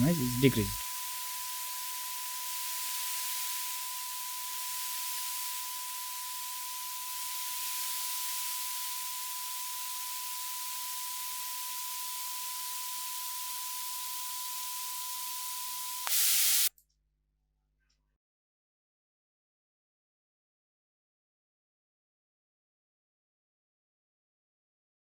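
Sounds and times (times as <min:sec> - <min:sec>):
white noise hiss: 0:00.0 - 0:05.9
steady sine tone: 0:00.0 - 0:16.7.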